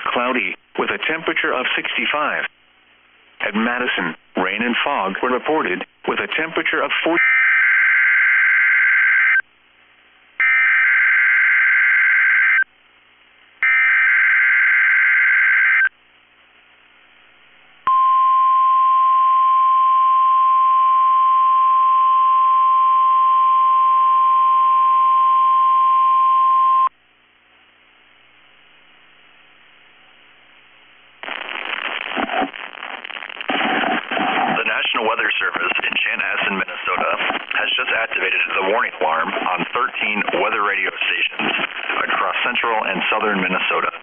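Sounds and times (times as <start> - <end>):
faint radio hiss: 0.0 - 7.2, 15.9 - 17.9, 27.0 - 44.0
steady warning alarm tone: 13.6 - 15.9.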